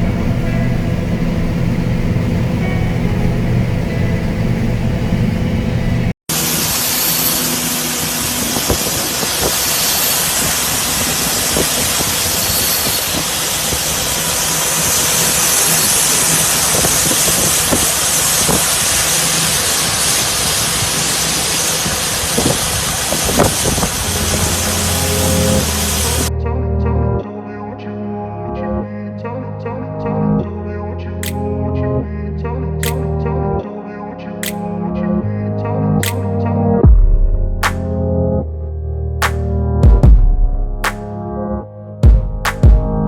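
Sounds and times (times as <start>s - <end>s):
hissy machine noise: 0.0s - 26.3s
diesel engine running: 0.0s - 26.4s.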